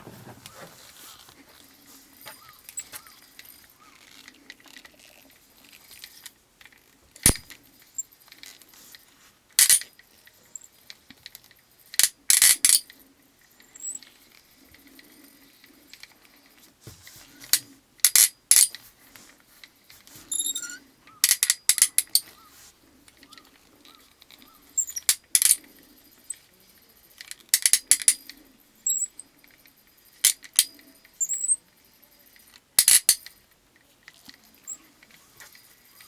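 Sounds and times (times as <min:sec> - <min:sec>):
fishing reel gear whir: 0:01.6 - 0:06.1, 0:20.3 - 0:31.6
fishing reel clicking: 0:02.2 - 0:16.6, 0:20.3 - 0:36.0.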